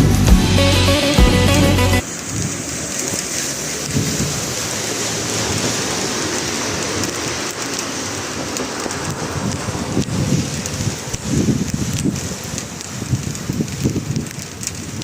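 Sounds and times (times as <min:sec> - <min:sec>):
music track: 0:00.0 - 0:02.0
steady rain falling: 0:00.0 - 0:15.0.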